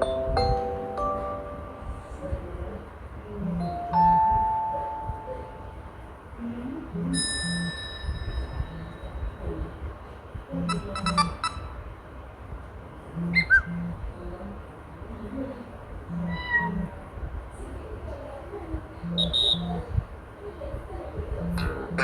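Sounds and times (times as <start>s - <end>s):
bell-like tone: 0.0s - 2.1s, 7.1s - 9.4s
bird-like chirp: 10.7s - 11.8s, 13.3s - 13.8s, 19.2s - 19.8s
cluster of short tones: 16.2s - 16.9s.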